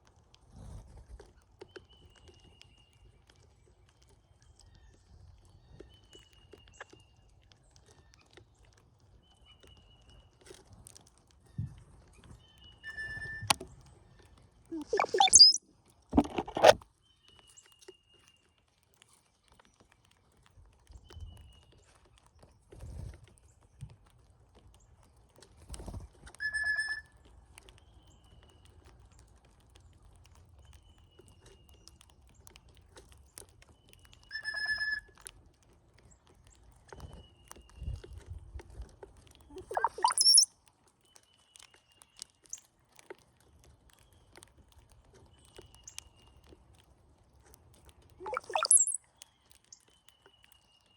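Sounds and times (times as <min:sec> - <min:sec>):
faint short whistles: 0:12.8 - 0:13.6, 0:14.8 - 0:15.6, 0:26.4 - 0:27.1, 0:34.3 - 0:35.1, 0:39.5 - 0:40.5
bird gurgling song: 0:14.7 - 0:15.6, 0:39.4 - 0:40.5, 0:48.2 - 0:50.7
bird calls: 0:14.8 - 0:15.6, 0:39.5 - 0:40.5, 0:48.2 - 0:49.0.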